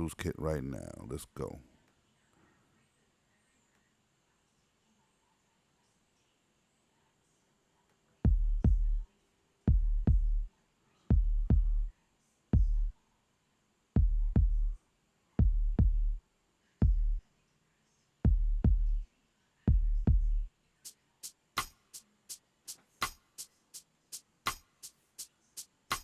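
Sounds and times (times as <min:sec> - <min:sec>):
kick drum loop: 0:08.2 - 0:09.1, 0:09.7 - 0:10.5, 0:11.1 - 0:11.9, 0:12.6 - 0:12.9, 0:14.0 - 0:14.8, 0:15.4 - 0:16.2, 0:16.8 - 0:17.2, 0:18.3 - 0:19.0, 0:19.7 - 0:20.5, 0:25.5 - 0:26.0.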